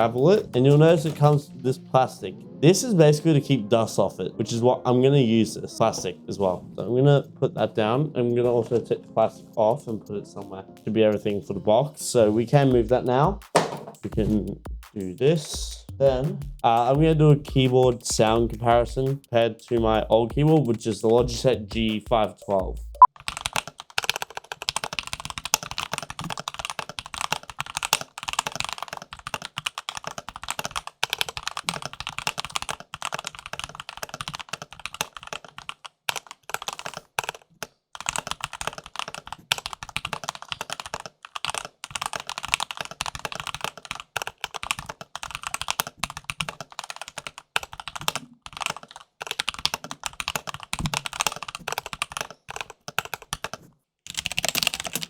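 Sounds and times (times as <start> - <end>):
mechanical keyboard typing: 0.0 - 1.5, 12.9 - 55.0.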